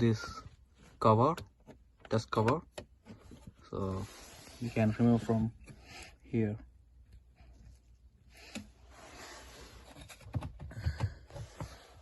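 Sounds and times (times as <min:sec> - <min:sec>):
soft scraping rustle: 0:03.2 - 0:05.9.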